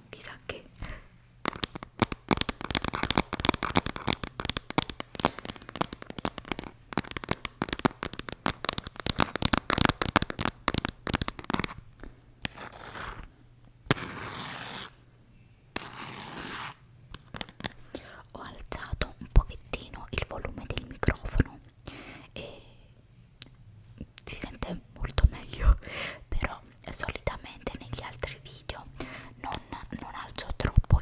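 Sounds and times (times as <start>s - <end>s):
packaging crinkling: 1.4s - 13.2s.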